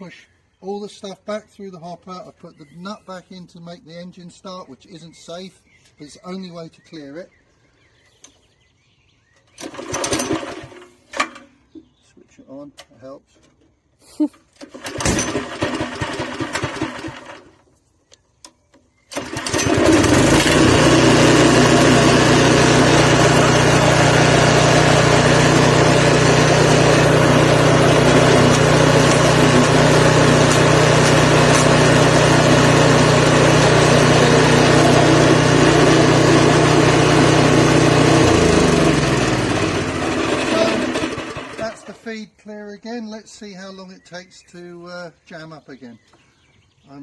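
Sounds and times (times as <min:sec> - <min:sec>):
wood chipper engine running: 0:09.6 - 0:11.0, 0:14.6 - 0:17.7, 0:19.1 - 0:42.0.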